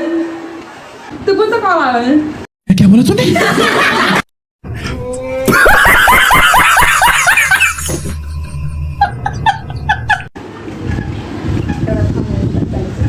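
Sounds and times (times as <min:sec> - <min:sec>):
high-pitched laughter: 0:05.4 - 0:10.3.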